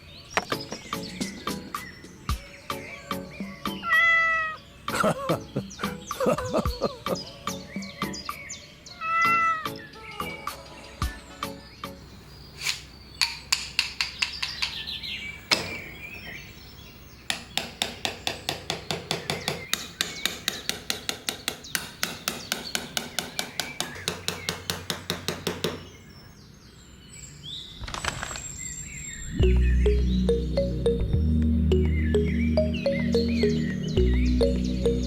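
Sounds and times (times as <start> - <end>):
birds chirping: 0.0 - 35.0
small hammer tapping on wood: 13.2 - 15.8, 17.3 - 25.9.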